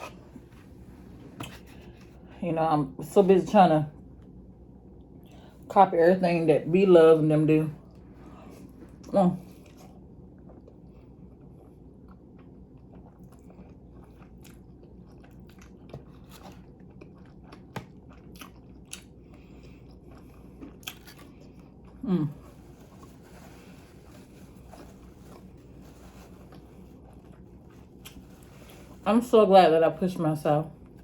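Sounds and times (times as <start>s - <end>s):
food crunching: 8.7s - 29.1s
person chewing and biting: 9.6s - 29.0s.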